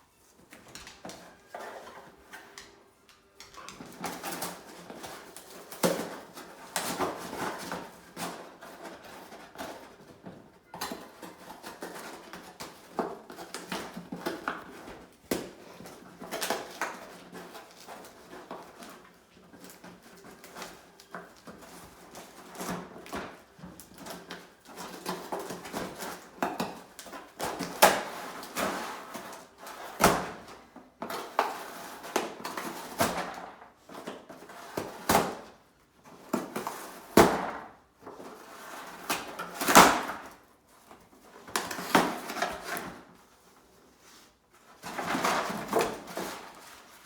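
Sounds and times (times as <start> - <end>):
scraping and rustling: 0.0 - 47.0.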